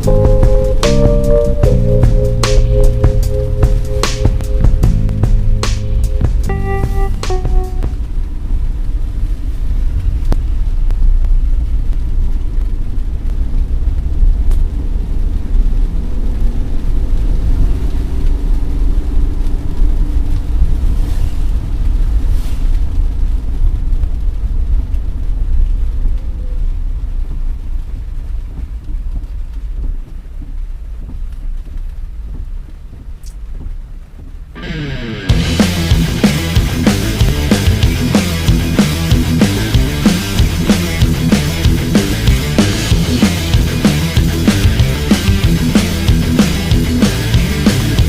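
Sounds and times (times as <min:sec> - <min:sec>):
engine hum: 0:00.0 - 0:09.6, 0:34.6 - 0:48.0
heavy rain: 0:00.0 - 0:33.0, 0:34.6 - 0:48.0
road and wind noise rumble: 0:00.0 - 0:48.0.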